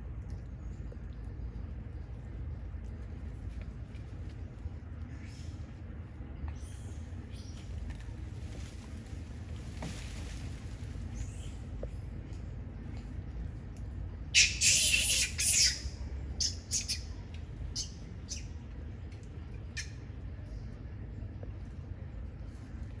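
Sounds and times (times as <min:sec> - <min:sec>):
steady low rumble: 0:00.0 - 0:14.4, 0:15.3 - 0:23.0
harsh animal squawks: 0:14.4 - 0:17.0.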